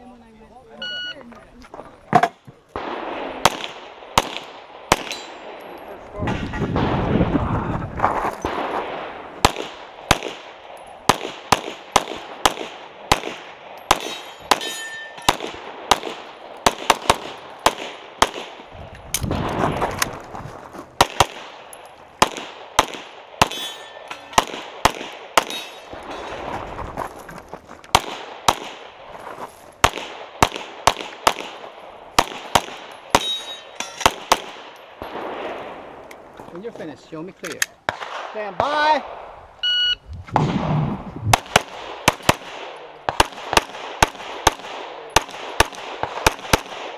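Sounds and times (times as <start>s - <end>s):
pistol shots: 2.8s - 5.6s, 8.4s - 19.6s, 21.0s - 26.3s, 27.9s - 29.0s, 29.8s - 36.0s, 37.8s - 38.4s, 40.4s - 46.9s
steel targets ringing: 5.1s - 5.4s, 14.0s - 15.4s, 23.4s - 24.5s, 25.4s - 26.4s, 33.0s - 34.2s.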